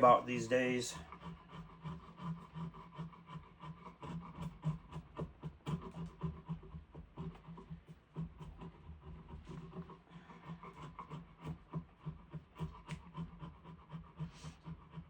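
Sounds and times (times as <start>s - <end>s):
hand sanding wooden stick: 0.0s - 10.8s.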